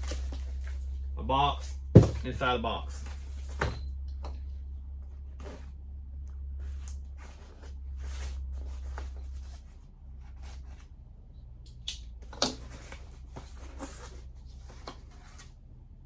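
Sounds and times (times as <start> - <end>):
cardboard box rustling and scraping: 0.0 - 1.0, 1.6 - 3.8, 5.3 - 5.8, 6.6 - 10.9, 12.6 - 15.6.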